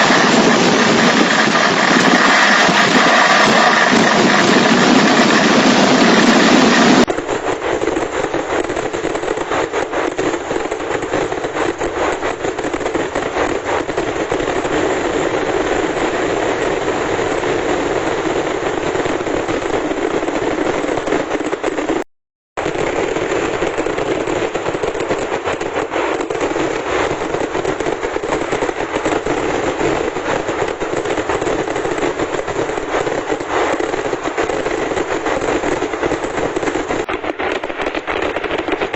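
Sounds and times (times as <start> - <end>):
steady pitched sound: 0.0 - 7.1
rapid firecracker cracks: 0.0 - 38.9.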